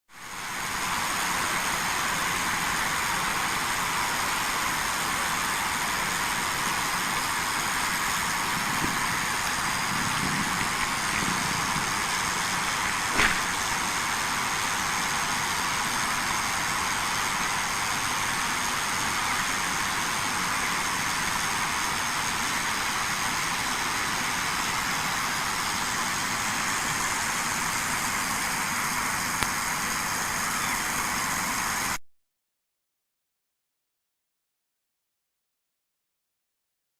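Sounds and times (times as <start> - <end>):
power line hissing: 0.2 - 32.0
sharp electrical crack: 12.9 - 14.3.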